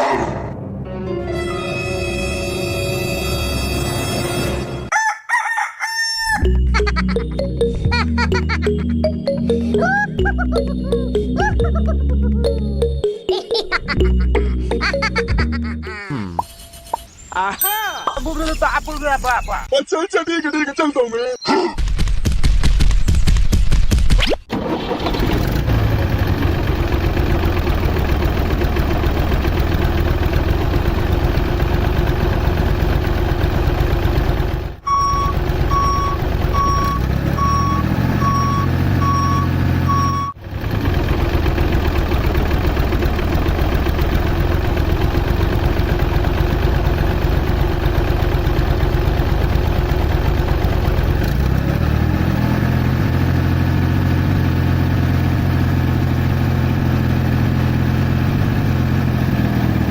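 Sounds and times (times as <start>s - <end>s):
tractor engine running: 24.5s - 59.9s
reversing alarm beeping: 34.8s - 40.4s.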